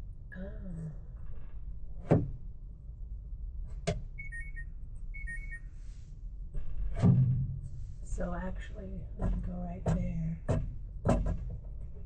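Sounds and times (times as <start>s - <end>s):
low hum: 0.0s - 12.0s
short high electronic beeps: 4.2s - 5.7s.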